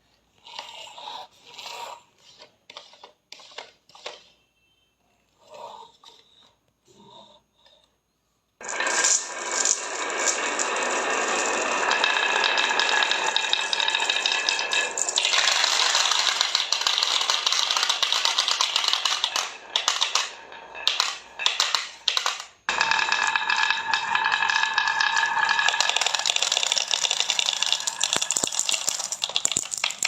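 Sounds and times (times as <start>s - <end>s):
marbles rattling down a track: 8.6s - 30.0s.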